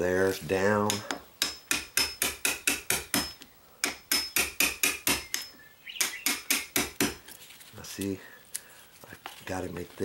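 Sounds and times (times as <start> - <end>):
hammer tapping a chisel: 0.8 - 7.2.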